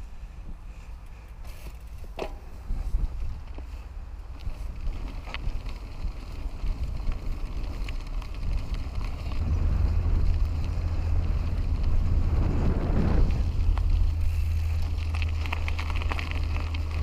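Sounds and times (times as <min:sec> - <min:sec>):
bike clicks and rattles: 0:00.4 - 0:17.0
low rumble: 0:02.7 - 0:17.0
wind buffeting microphone: 0:04.2 - 0:17.0.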